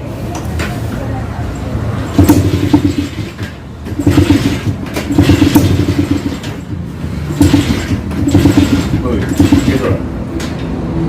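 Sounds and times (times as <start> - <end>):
two-stroke motorcycle engine: 1.9 - 10.8.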